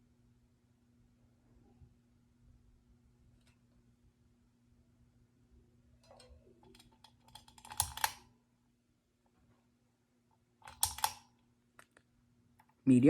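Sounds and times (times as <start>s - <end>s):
ceiling fan switch clicks and rattles: 6.0s - 8.2s, 10.6s - 11.2s.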